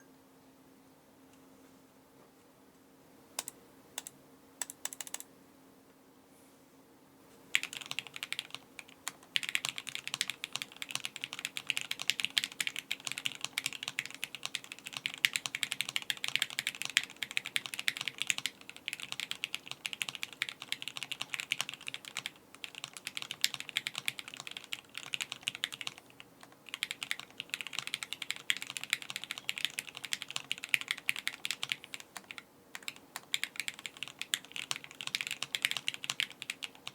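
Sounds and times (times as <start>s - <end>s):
mechanical keyboard typing: 3.4s - 5.2s, 7.5s - 36.9s.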